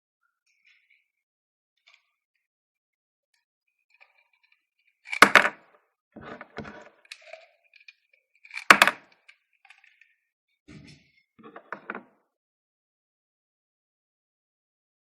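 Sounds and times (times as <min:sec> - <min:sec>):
plastic toy clicking and rattling: 0:04.0 - 0:05.5, 0:07.0 - 0:10.1
plastic toy snapping: 0:08.5 - 0:09.3.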